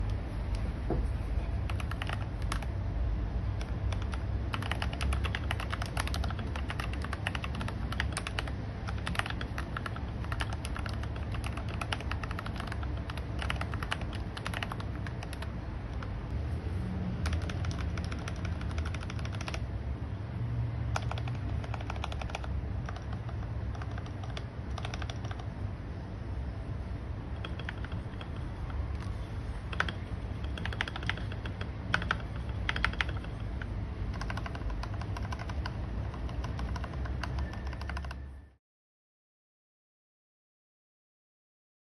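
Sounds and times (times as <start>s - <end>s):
mechanical keyboard typing: 1.6s - 2.8s, 3.5s - 16.1s, 17.2s - 19.7s, 20.9s - 25.6s, 27.3s - 38.6s.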